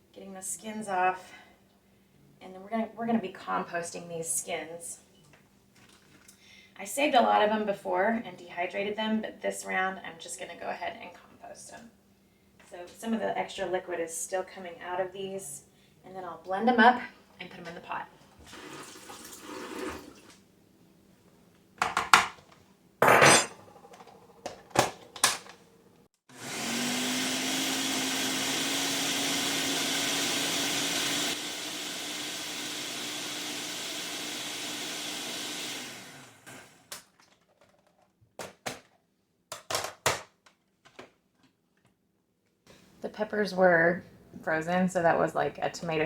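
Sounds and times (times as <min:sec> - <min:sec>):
kitchenware knocking and clattering: 0:21.8 - 0:22.4, 0:23.0 - 0:24.9
electric blender running: 0:26.3 - 0:36.9.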